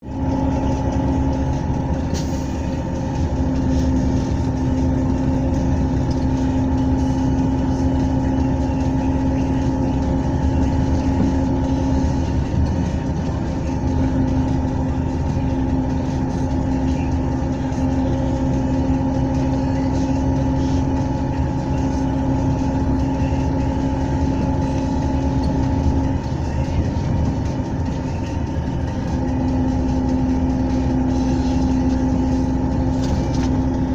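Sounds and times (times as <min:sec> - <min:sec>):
large engine droning: 0:00.0 - 0:33.9.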